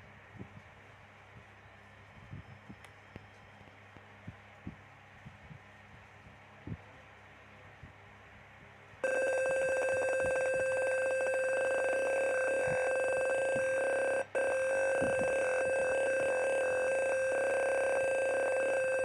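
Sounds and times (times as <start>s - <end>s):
fire alarm buzzer: 9.0s - 19.0s.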